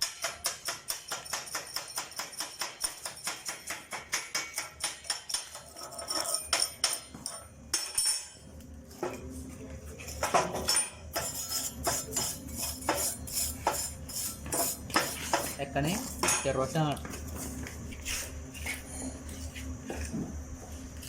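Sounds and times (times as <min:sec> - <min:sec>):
hammer striking steel: 0:00.0 - 0:05.6.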